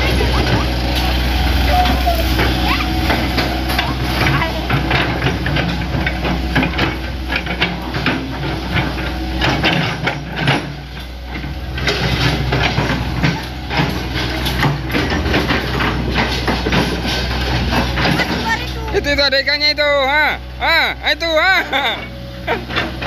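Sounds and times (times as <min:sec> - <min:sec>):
excavator diesel engine running: 0:00.0 - 0:23.0
knocks and clatters: 0:02.4 - 0:19.0.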